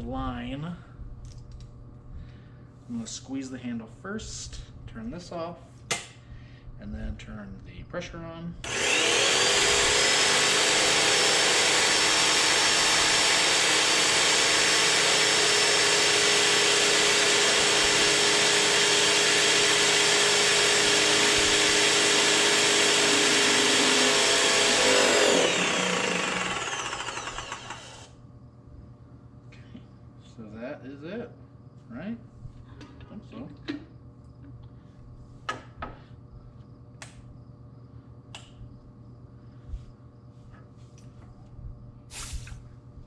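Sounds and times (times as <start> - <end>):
paint sprayer pump whining: 8.6 - 28.1
spray gun hissing: 42.1 - 42.6.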